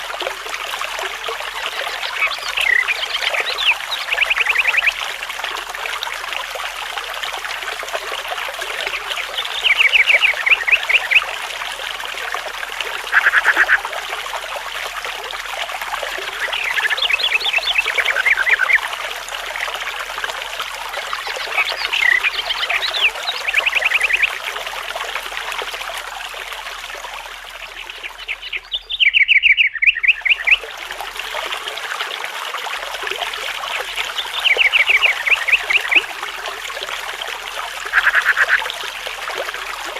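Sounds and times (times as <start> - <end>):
trickling stream: 0.0 - 39.9
songbirds trilling: 1.4 - 5.0, 8.8 - 11.3, 13.0 - 13.8, 16.2 - 18.8, 21.0 - 24.3, 27.7 - 30.6, 33.7 - 36.1, 37.8 - 38.8.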